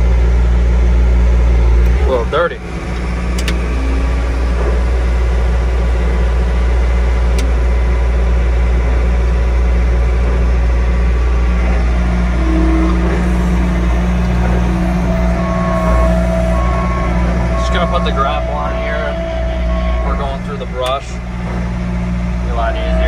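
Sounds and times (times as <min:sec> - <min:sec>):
diesel engine running: 0:00.0 - 0:23.0
high steady tone: 0:11.2 - 0:23.0.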